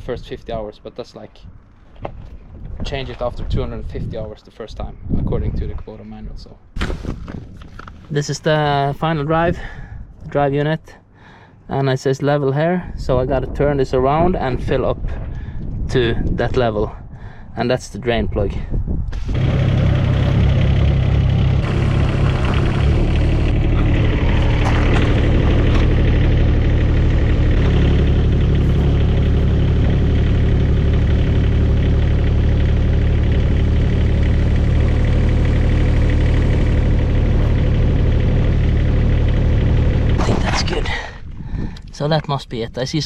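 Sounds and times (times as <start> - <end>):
diesel engine running: 19.2 - 41.1.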